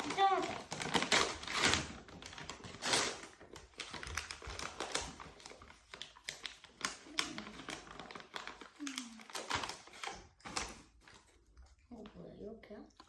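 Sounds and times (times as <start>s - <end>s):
packaging rustling: 0.0s - 11.4s.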